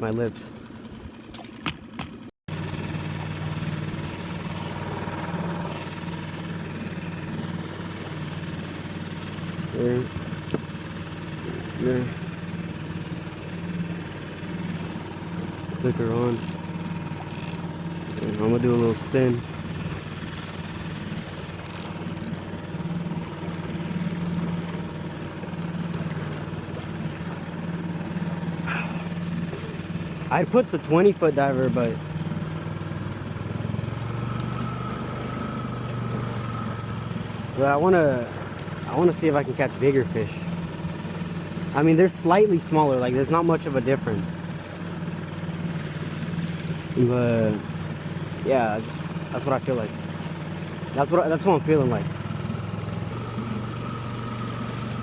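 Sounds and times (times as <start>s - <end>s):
boat motor idling: 0.0s - 55.0s
faint high ticks: 16.2s - 16.6s, 17.2s - 18.9s, 20.2s - 20.7s, 21.6s - 22.5s, 24.0s - 26.0s.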